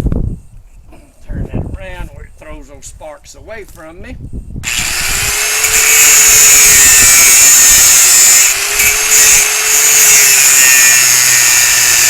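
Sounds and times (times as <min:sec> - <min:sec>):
grinder grinding steel: 0:04.6 - 0:12.0.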